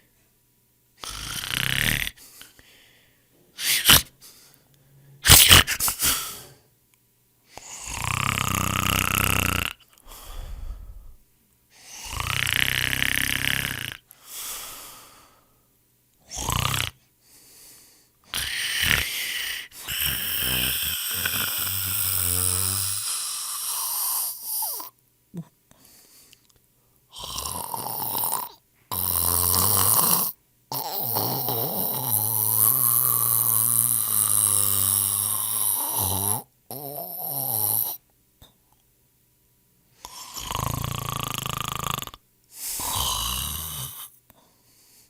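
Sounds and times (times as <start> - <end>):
person snoring: 1.0 - 2.6, 3.6 - 4.1, 7.6 - 11.2, 11.8 - 15.1, 16.2 - 17.0, 18.3 - 25.5, 27.1 - 38.0, 40.0 - 44.2.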